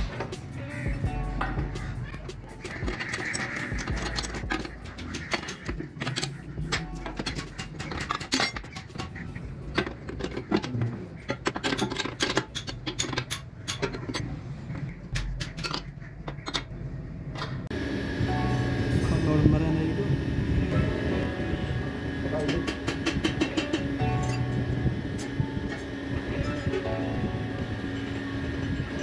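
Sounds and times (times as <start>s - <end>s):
low steady hum: 0.9s - 29.0s
metallic clinks and knocks: 2.6s - 14.2s.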